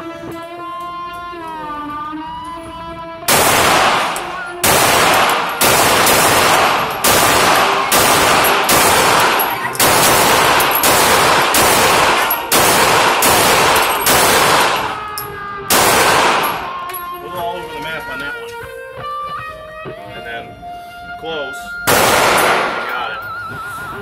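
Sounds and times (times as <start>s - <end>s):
gunshots with ringing echo: 3.3s - 16.9s, 21.9s - 23.2s.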